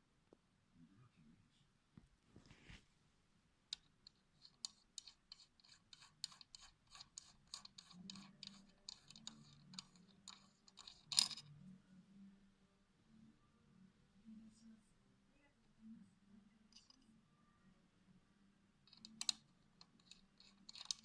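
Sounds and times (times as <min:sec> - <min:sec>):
light clicks and taps of parts: 0:18.9 - 0:21.0.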